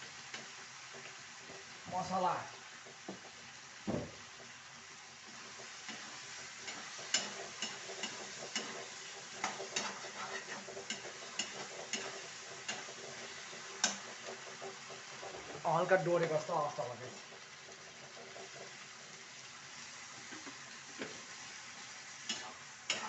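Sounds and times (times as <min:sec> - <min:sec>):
food sizzling: 0:00.0 - 0:23.0
spoon scraping metal pot: 0:06.6 - 0:14.0.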